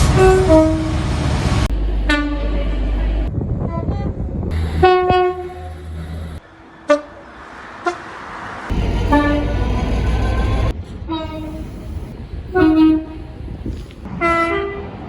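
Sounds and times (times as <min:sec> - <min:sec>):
train horn blasts: 0:00.0 - 0:01.0, 0:01.8 - 0:06.1, 0:08.7 - 0:15.0
low engine rumble: 0:00.0 - 0:06.6, 0:08.7 - 0:15.0.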